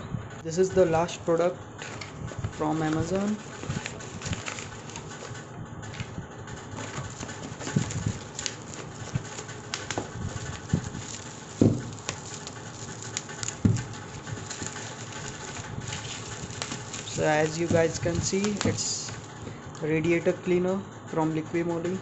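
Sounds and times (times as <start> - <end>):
package rustling and clicking: 2.8 - 19.5
heavy thumps: 11.6 - 12.2.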